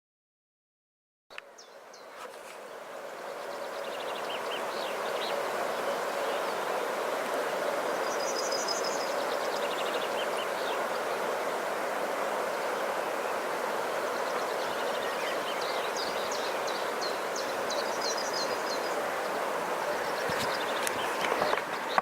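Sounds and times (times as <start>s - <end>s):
flooding river rushing: 2.6s - 22.0s
small birds chirping: 12.6s - 22.0s.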